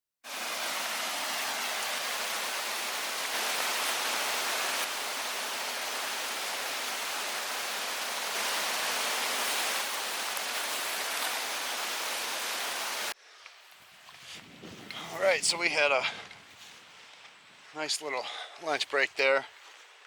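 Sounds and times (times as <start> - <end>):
creek water falling over rocks: 0.3 - 13.2.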